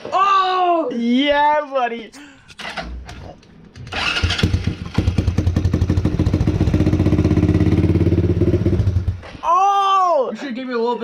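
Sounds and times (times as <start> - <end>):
atv engine running: 3.8 - 9.2
loud shout: 9.4 - 10.4.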